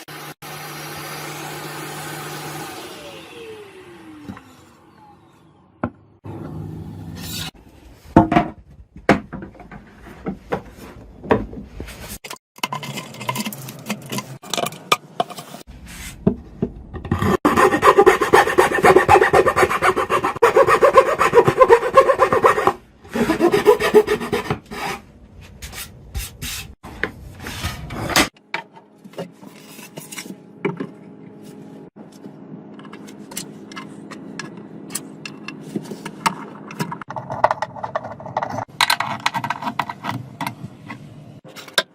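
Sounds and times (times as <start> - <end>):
hand tool scraping wood: 17.1 - 25.0.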